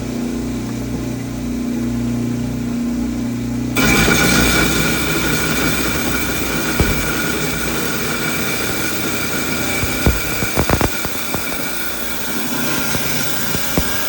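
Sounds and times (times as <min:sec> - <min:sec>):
rock saw cutting with high whine: 0:03.8 - 0:14.0
sharp knocks: 0:03.8 - 0:14.0.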